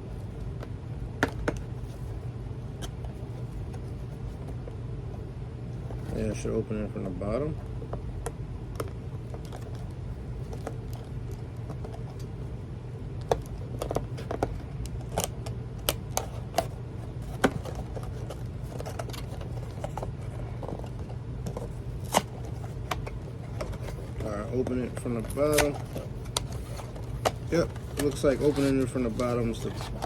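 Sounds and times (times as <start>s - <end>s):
steady low hum: 0.0s - 30.0s
cardboard box crinkling: 17.0s - 30.0s.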